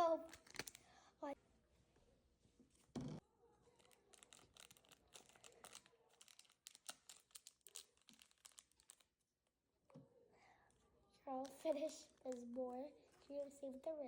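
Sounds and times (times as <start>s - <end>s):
plastic packet crinkling: 3.8s - 9.2s.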